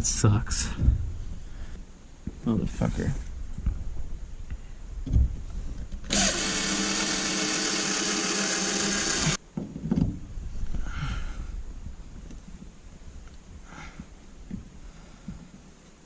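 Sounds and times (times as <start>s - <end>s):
electric drill drilling aluminum: 6.1s - 9.4s
thump: 9.6s - 10.2s.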